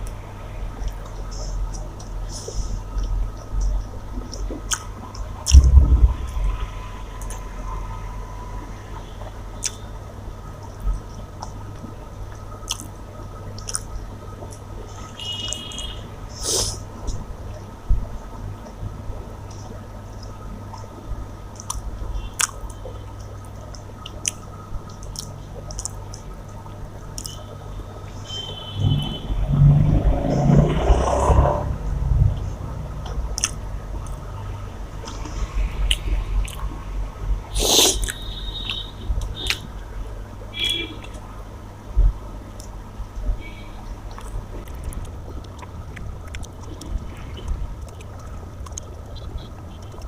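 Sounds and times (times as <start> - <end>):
steady low hum: 0.0 - 50.0
wet mouth clicks and smacks: 4.3 - 5.8, 12.7 - 12.9, 13.6 - 14.6, 21.6 - 21.8, 23.7 - 26.3, 27.2 - 27.4, 33.0 - 34.2, 35.9 - 36.6, 37.8 - 39.7, 44.1 - 50.0
loud low thud: 5.5 - 6.7
wet squishing of food eaten: 12.6 - 13.0, 13.6 - 14.7, 21.6 - 26.3, 33.0 - 34.2, 35.0 - 36.8
person chewing food: 12.7 - 12.9, 13.6 - 14.6, 22.4 - 22.8, 23.7 - 26.3, 33.0 - 34.2, 35.1 - 36.8, 37.7 - 39.6, 44.1 - 50.0.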